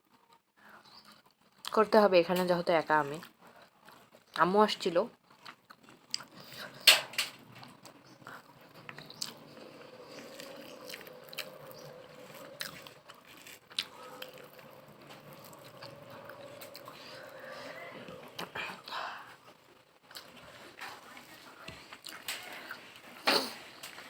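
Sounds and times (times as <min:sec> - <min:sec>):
person chewing and smacking: 0:05.2 - 0:06.8, 0:07.6 - 0:17.3, 0:19.4 - 0:20.4, 0:21.1 - 0:23.0
faint steady hum: 0:06.1 - 0:24.0.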